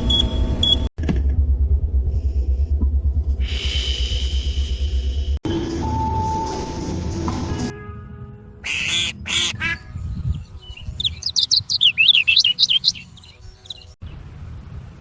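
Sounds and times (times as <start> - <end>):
raspy duck quacks: 8.6 - 9.8.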